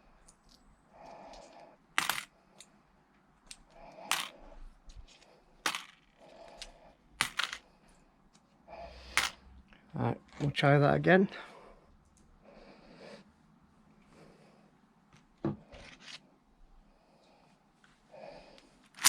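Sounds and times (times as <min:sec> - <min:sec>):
coins clinking: 0:02.0 - 0:02.3, 0:04.1 - 0:04.4, 0:05.7 - 0:06.2, 0:07.2 - 0:07.6, 0:09.1 - 0:09.4.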